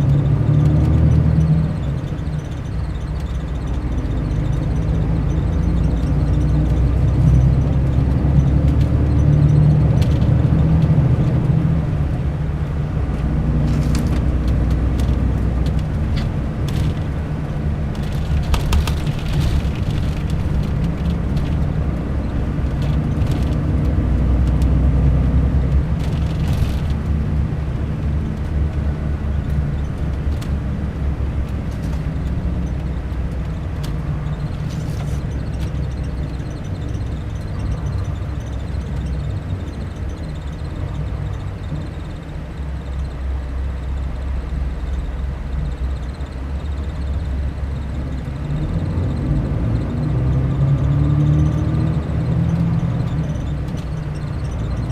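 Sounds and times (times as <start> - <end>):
diesel engine rumble: 0.0 - 54.9.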